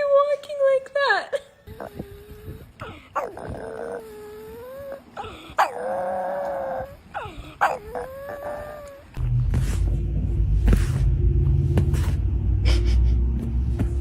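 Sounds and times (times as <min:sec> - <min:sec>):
dog whining howls: 0:03.2 - 0:09.2
low rumble: 0:09.1 - 0:14.0.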